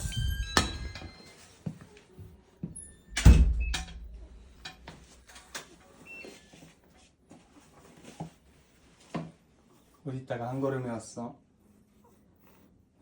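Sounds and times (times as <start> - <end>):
door opening and shutting: 0.0 - 1.4, 2.7 - 5.0
heavy door thud: 3.1 - 4.6
door latch clicks and knocks: 3.2 - 4.2.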